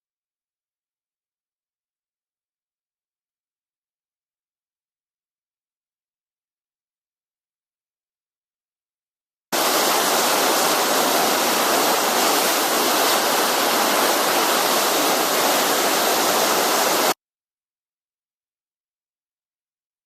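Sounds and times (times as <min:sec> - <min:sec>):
breaking surf: 0:09.6 - 0:17.2.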